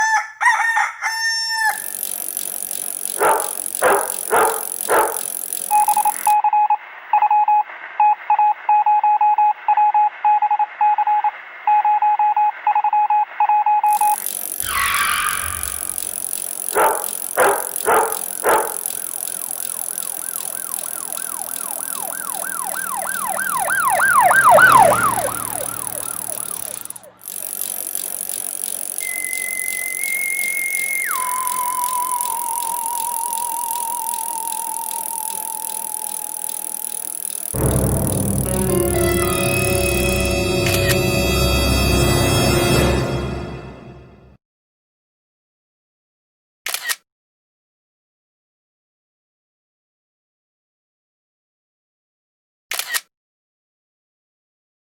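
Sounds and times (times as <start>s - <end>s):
rapid beeping tone pulses: 1.8s - 6.4s, 13.9s - 44.3s
electronic chirps: 1.9s - 6.4s, 13.9s - 27.6s, 29.0s - 44.3s
warbling siren-like tone: 13.9s - 16.2s, 17.8s - 27.2s, 29.0s - 44.3s
electronic swoosh: 23.4s - 27.1s
steady tone stepping down: 37.6s - 44.3s.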